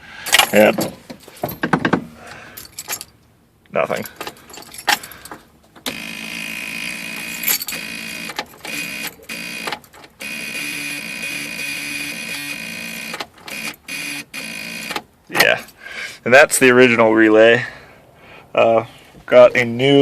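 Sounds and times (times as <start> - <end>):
relay buzzing: 5.9 - 15.0.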